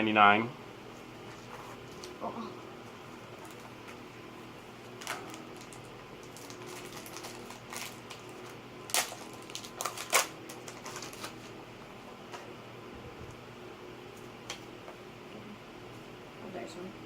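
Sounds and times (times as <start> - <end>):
cards and packaging crackling: 3.4 - 4.0, 4.9 - 11.5.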